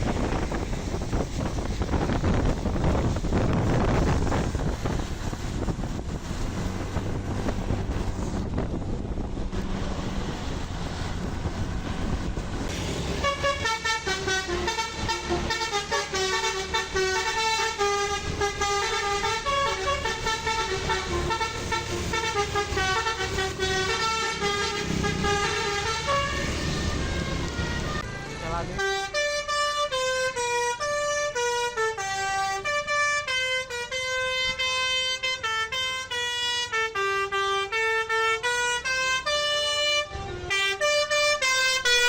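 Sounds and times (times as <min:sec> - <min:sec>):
low vehicle rumble: 0:00.0 - 0:42.0
musical air horn playing a tune: 0:12.8 - 0:42.0.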